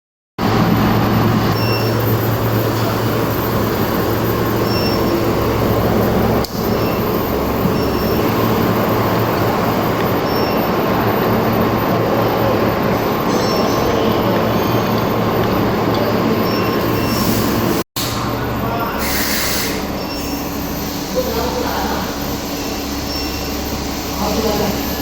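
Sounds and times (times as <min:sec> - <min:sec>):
furnace mechanical hum and rush: 0:00.4 - 0:25.0.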